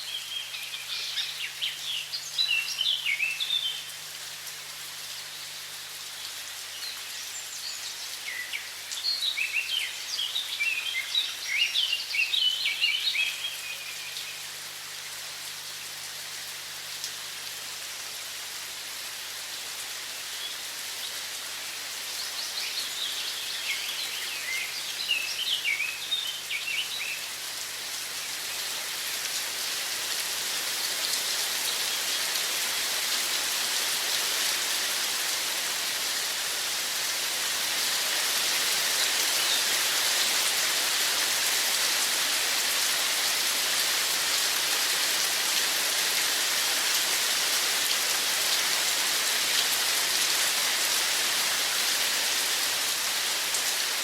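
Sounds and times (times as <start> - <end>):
songbird chirping: 20.4 - 27.3
running water rushing: 21.2 - 54.0.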